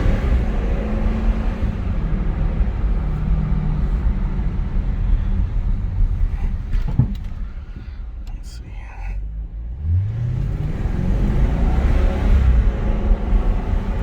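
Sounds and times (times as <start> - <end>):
tyre and road noise: 0.0 - 8.5.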